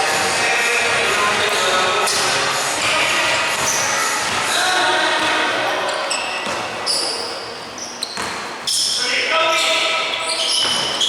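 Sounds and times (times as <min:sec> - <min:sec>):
players' voices: 0:00.0 - 0:07.6.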